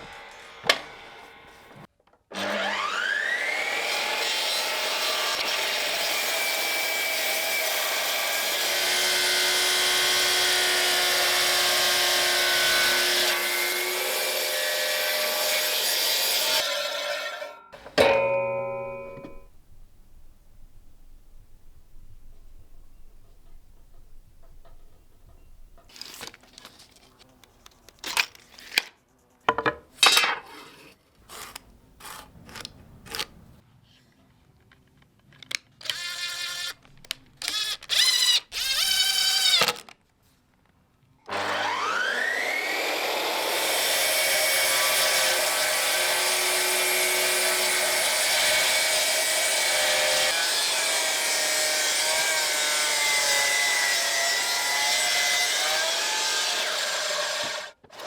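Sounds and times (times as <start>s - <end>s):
power saw cutting wood: 0.0s - 19.3s, 41.3s - 58.0s
handling knocks: 17.8s - 25.9s.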